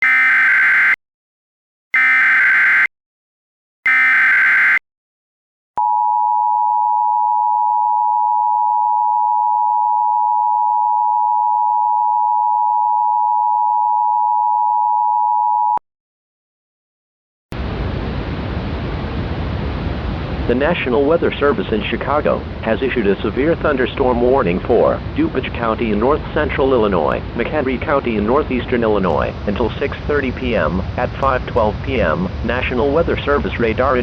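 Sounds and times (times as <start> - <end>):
digital header data bursts: 0.0 - 1.0, 2.0 - 2.9, 3.9 - 4.8
two-tone attention signal: 0.0 - 1.0, 2.0 - 2.9, 3.9 - 4.8.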